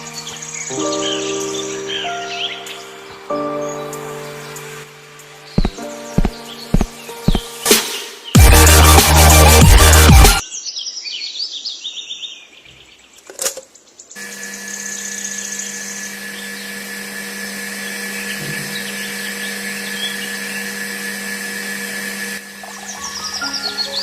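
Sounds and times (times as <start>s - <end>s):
handheld power tool running: 5.6s - 7.4s, 8.4s - 10.4s, 14.2s - 23.5s.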